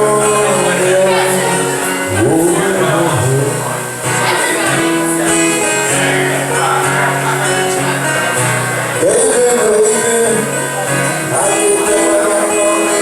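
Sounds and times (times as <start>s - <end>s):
person singing: 0.0s - 5.5s, 9.0s - 13.0s
sliding melodic line: 0.0s - 7.4s
ballad with held chords: 0.0s - 13.0s.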